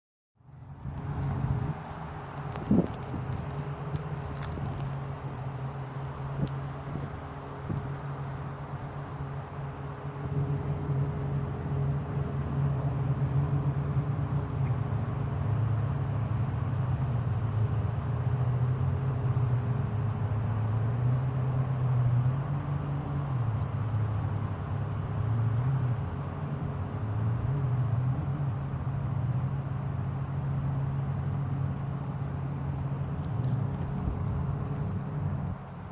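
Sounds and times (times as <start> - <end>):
crickets trilling: 0.4 - 35.9.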